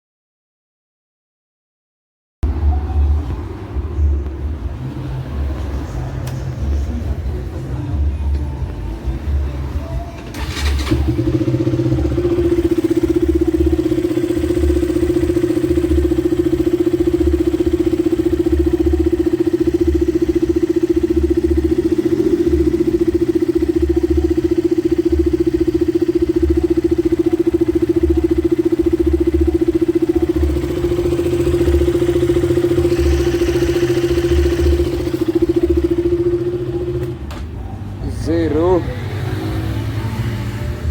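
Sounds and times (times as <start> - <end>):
motorcycle engine idling: 9.0 - 38.0.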